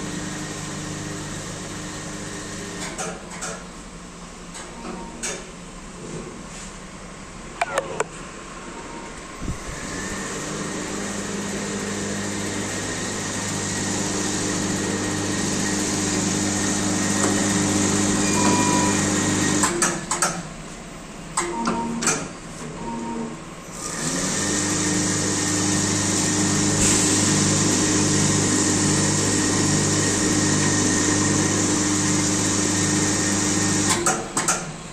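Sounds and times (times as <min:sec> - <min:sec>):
machine clicks and knocks: 0:19.6 - 0:20.5, 0:33.9 - 0:34.8.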